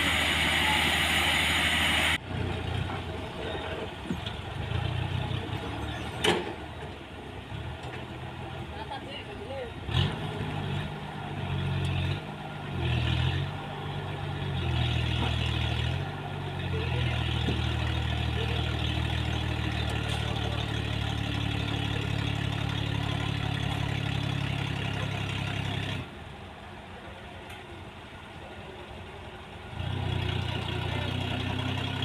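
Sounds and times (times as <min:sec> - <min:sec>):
engine revving: 0:09.9 - 0:26.1.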